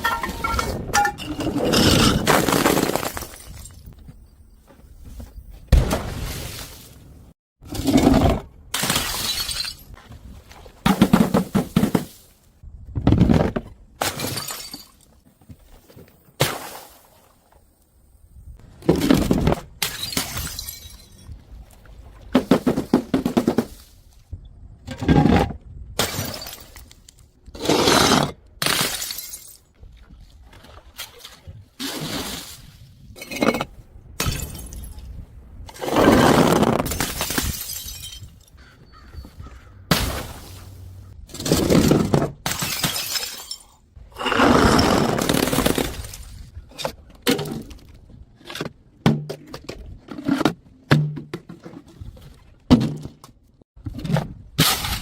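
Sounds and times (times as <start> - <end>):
glass bottles smashing: 8.8 - 10.0, 14.1 - 15.0, 19.8 - 21.3, 36.9 - 38.4, 41.4 - 43.8.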